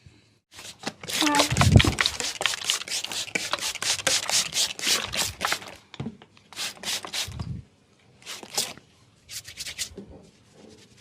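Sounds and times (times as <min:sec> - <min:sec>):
hands brushing over skin: 0:08.3 - 0:11.0.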